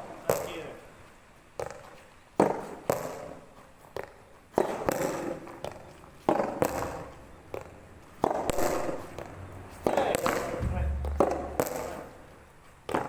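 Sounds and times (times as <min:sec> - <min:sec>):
tennis balls bouncing on court: 0:02.4 - 0:03.4, 0:04.0 - 0:12.1
tennis balls struck by rackets: 0:04.5 - 0:12.3.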